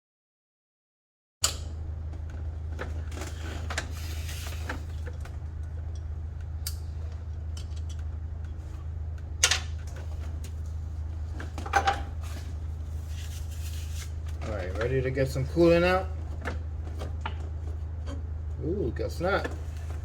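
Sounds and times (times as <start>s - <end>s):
steady low hum: 1.4s - 20.0s.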